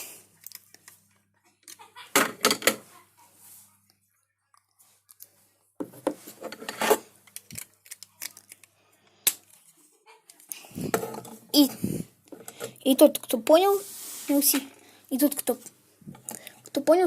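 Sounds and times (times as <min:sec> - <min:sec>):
plastic parts clicking and rattling: 0:06.5 - 0:09.6.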